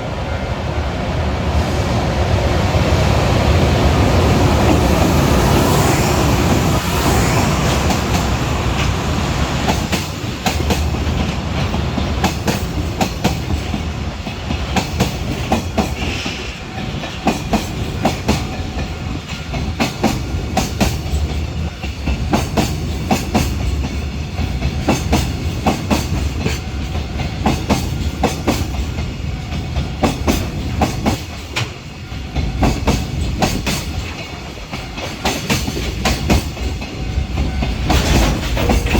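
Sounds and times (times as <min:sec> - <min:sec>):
electric locomotive rumble: 0:00.0 - 0:38.9
wagon wheels clacking over rail joints: 0:07.9 - 0:31.8, 0:32.4 - 0:38.9.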